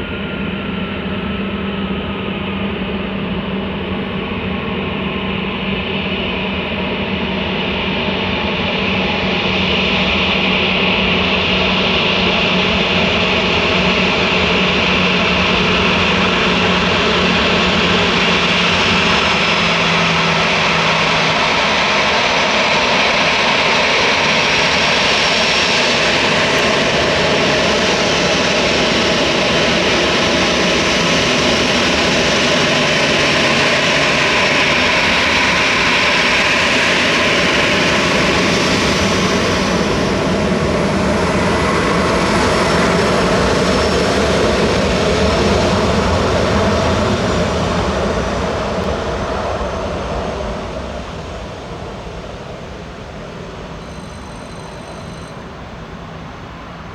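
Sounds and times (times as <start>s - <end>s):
airliner jet engines: 0.0s - 56.9s.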